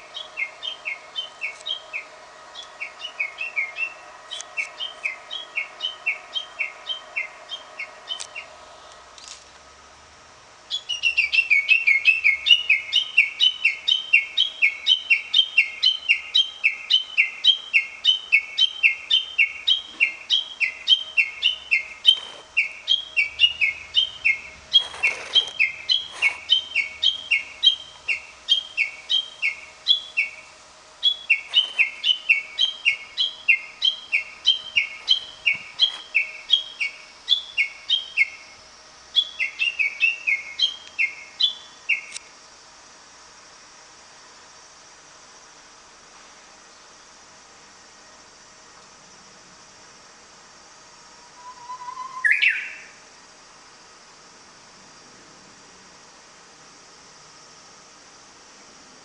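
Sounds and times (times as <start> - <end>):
bird singing repeated notes: 0.0 - 8.6, 10.7 - 42.2, 51.2 - 53.0.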